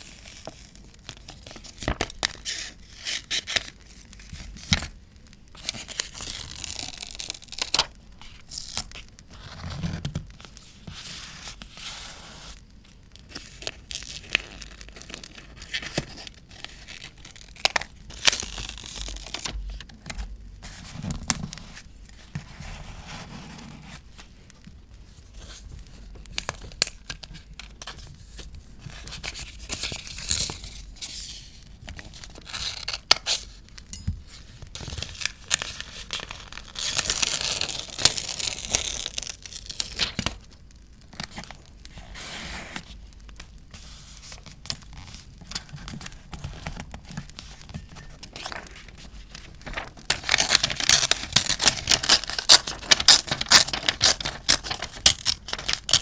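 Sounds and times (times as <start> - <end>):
paper tearing and crinkling: 5.6 - 12.6, 13.3 - 19.6, 34.3 - 40.4, 47.5 - 56.0.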